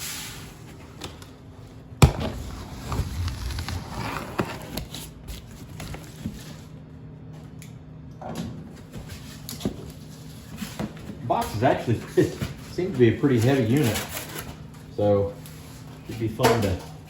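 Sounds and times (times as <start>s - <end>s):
cardboard scraping and rustling: 2.0s - 6.7s.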